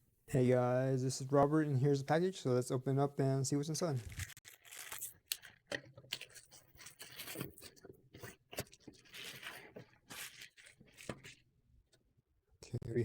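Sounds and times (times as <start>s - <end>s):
package being torn open: 4.0s - 7.9s.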